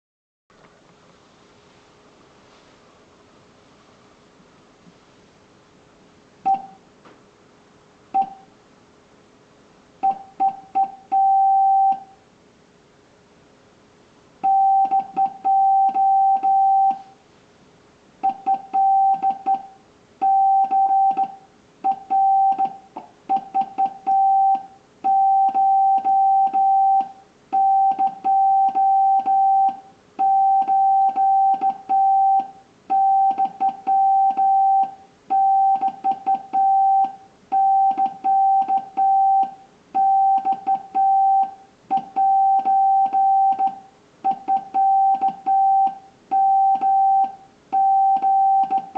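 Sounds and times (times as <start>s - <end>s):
morse code sidetone beeps: 6.5s - 6.8s, 8.2s - 8.5s, 10.0s - 12.1s, 14.4s - 17.2s, 18.2s - 48.9s.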